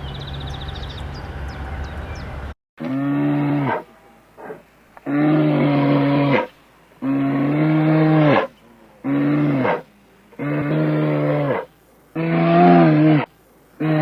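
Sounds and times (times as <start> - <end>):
cow mooing: 0.0 - 4.2.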